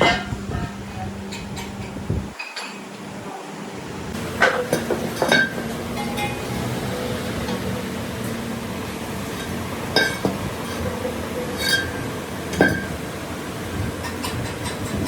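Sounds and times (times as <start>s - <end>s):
steady background hum: 0.0s - 15.0s
metal tools clinking: 4.4s - 6.4s, 11.6s - 12.0s.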